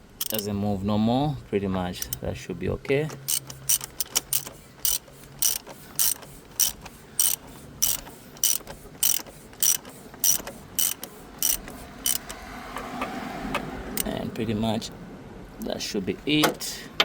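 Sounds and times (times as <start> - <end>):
ratchet wrench clicking: 0.0 - 0.5, 2.0 - 2.3, 3.1 - 12.4.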